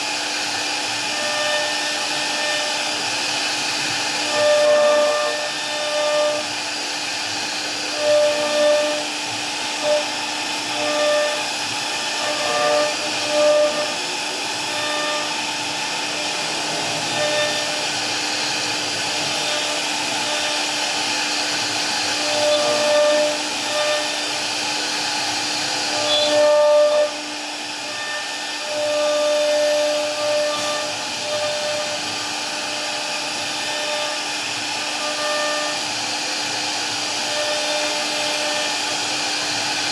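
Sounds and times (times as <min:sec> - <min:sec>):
cnc router cutting wood: 0:00.0 - 0:39.9.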